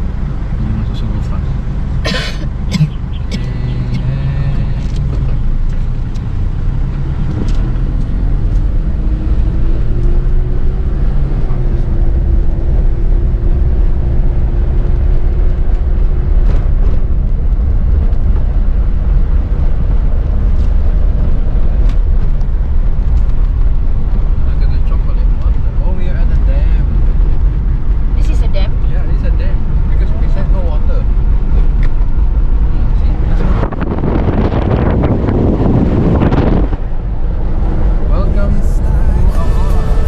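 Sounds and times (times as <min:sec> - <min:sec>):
car engine speeding up: 0:03.0 - 0:16.1, 0:32.4 - 0:40.0.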